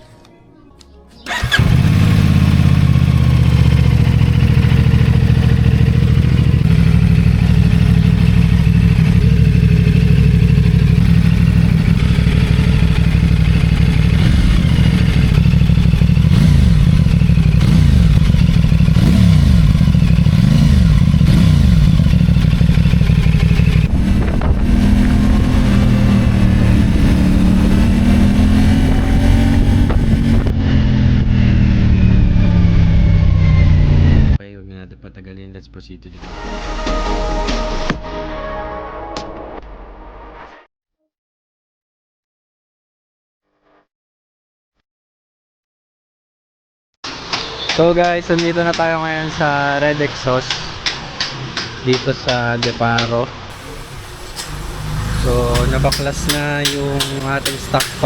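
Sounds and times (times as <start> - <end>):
motorcycle engine running: 1.3 - 33.8, 53.5 - 58.0.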